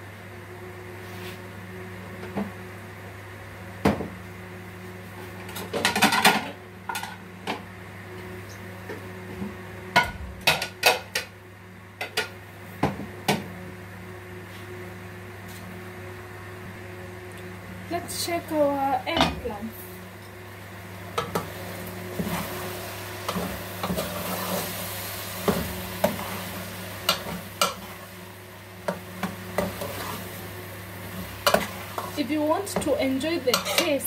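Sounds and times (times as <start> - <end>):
utensils clinking on pot and plate: 33.5 - 34.0.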